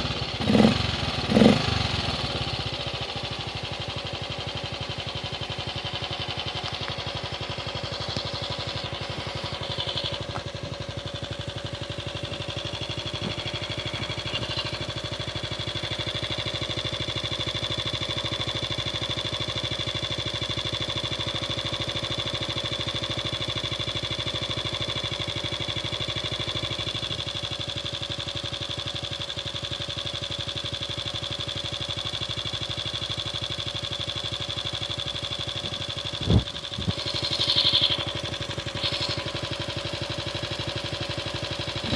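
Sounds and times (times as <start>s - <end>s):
motorcycle engine running steadily: 0.0s - 41.9s.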